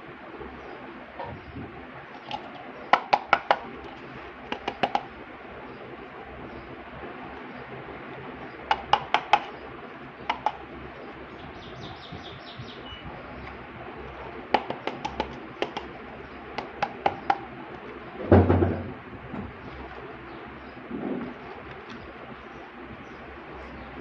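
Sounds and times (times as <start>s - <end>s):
high chirps: 8.4s - 13.5s
loud knock: 18.3s - 18.9s.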